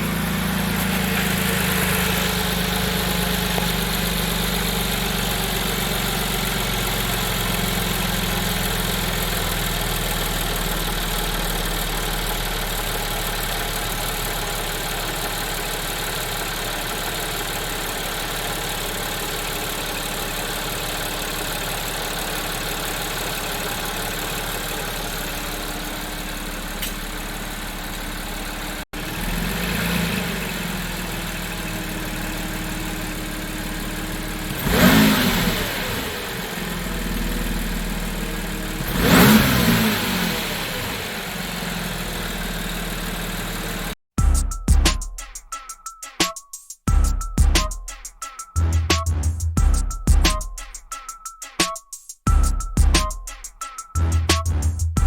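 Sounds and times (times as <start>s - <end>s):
car engine idling: 0.0s - 44.0s.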